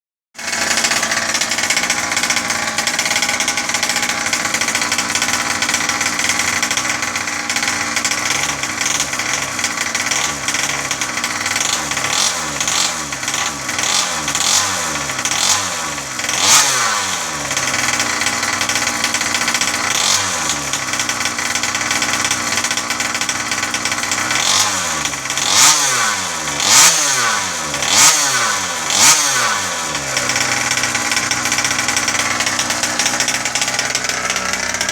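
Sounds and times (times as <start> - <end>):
small two-stroke engine revving: 0.4 - 34.9.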